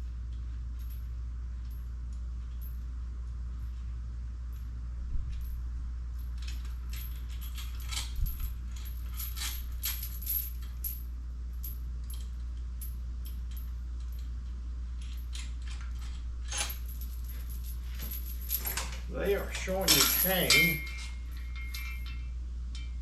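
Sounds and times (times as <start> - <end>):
steady low hum: 0.0 - 23.0
metal tools clinking: 6.4 - 11.0, 15.0 - 23.0.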